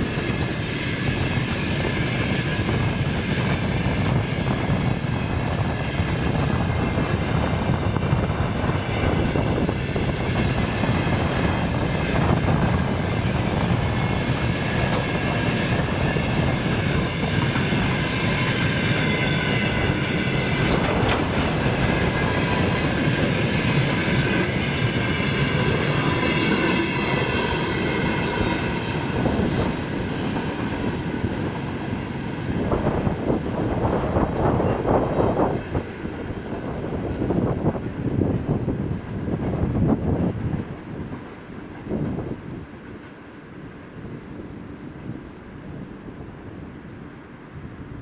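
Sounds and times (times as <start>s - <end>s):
train wheels clattering over rail joints: 0.0s - 32.0s
high whine from train wheels: 0.0s - 48.0s
strong wind blowing: 0.0s - 48.0s
train rumble: 0.0s - 48.0s.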